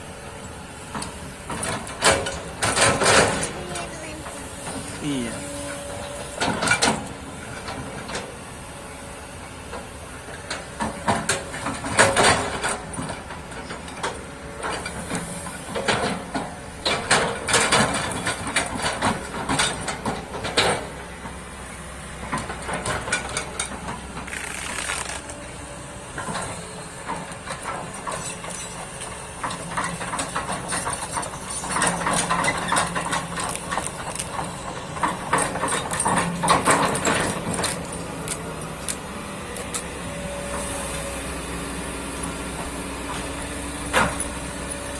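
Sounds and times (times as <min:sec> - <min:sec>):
excavator engine running: 0:00.0 - 0:44.9
bucket scraping and crunching soil: 0:24.3 - 0:25.4.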